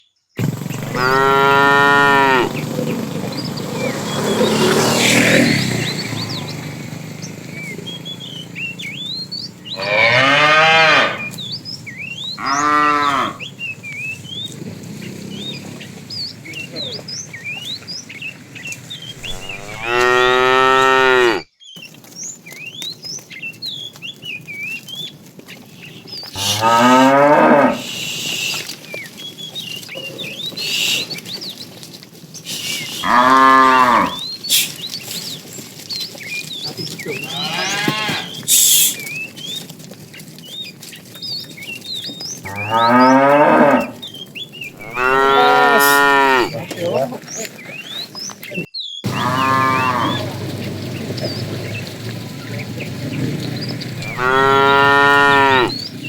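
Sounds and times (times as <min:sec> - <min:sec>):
cattle mooing: 0:00.4 - 0:06.8, 0:07.4 - 0:11.5, 0:12.1 - 0:13.8, 0:19.2 - 0:21.5, 0:26.4 - 0:28.8, 0:32.6 - 0:34.8, 0:37.0 - 0:39.0, 0:42.5 - 0:47.1, 0:49.1 - 0:51.6, 0:53.2 - 0:55.9.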